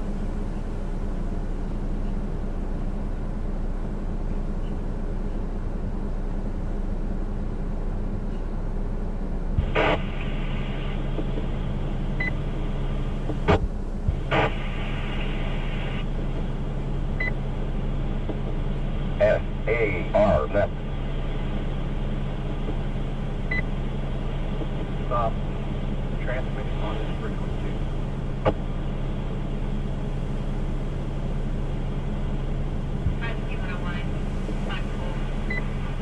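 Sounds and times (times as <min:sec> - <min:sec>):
low hum: 0:00.0 - 0:36.0
bursts of radio static: 0:09.6 - 0:11.4, 0:13.4 - 0:16.1, 0:19.2 - 0:21.4, 0:24.5 - 0:25.4
radio hiss: 0:09.6 - 0:17.4, 0:18.3 - 0:29.1, 0:33.1 - 0:36.0.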